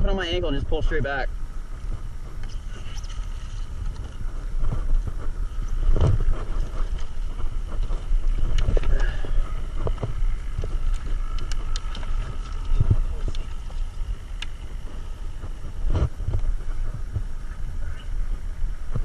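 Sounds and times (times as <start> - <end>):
wind buffeting microphone: 0.0 - 19.0
water sloshing and splashing: 2.4 - 4.2.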